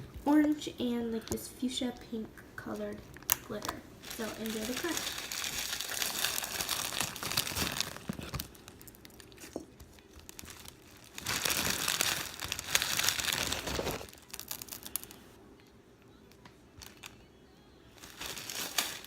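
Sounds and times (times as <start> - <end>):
crunchy slime crackling and popping: 3.2 - 15.3, 18.0 - 19.0.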